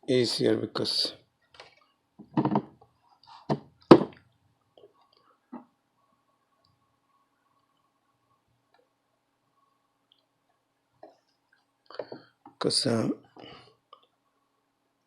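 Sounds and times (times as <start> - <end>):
faint steady whine: 0.0 - 15.0
tools knocking on workbench: 2.2 - 2.8, 3.5 - 4.2, 12.0 - 12.2.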